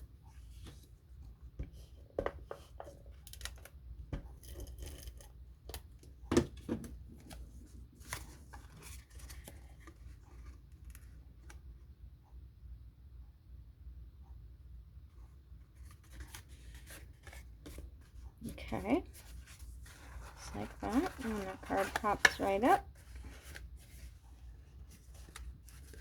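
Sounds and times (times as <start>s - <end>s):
paper rustling: 19.1s - 26.0s.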